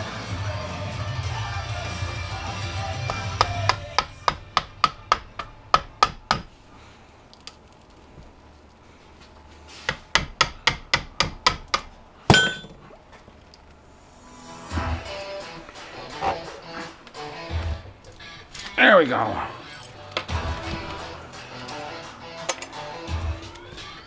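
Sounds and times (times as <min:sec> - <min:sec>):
hammer tapping metal tool: 0:03.1 - 0:06.5
ringing metallic hit: 0:12.3 - 0:12.8.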